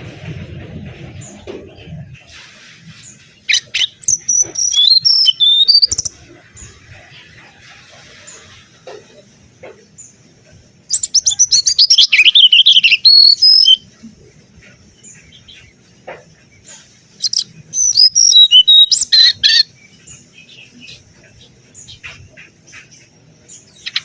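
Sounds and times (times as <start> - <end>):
faint bird chirps: 3.1 - 9.2, 10.9 - 24.0
bird warbling and whistling: 3.5 - 6.1, 10.9 - 13.8, 17.2 - 19.7.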